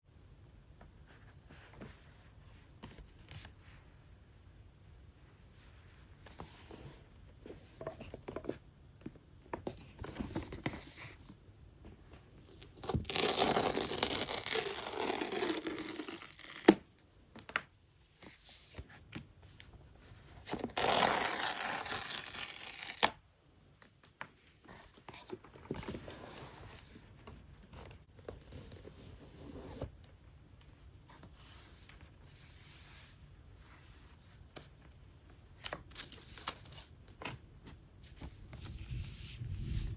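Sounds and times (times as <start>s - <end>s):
packaging being torn open: 12.9s - 16.8s, 20.6s - 23.2s.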